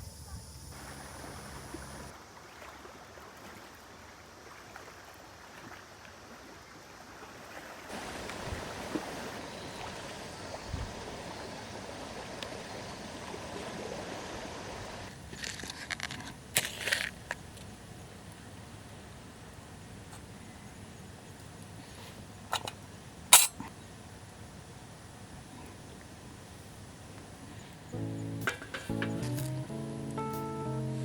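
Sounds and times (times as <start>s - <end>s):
sea waves washing on shore: 0.7s - 15.8s.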